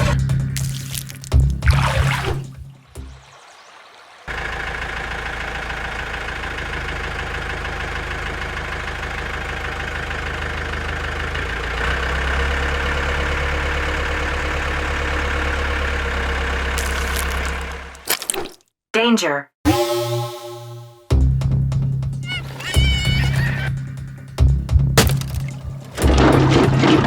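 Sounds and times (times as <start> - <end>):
vehicle engine running: 0.0 - 1.6, 4.3 - 18.0, 21.3 - 27.0.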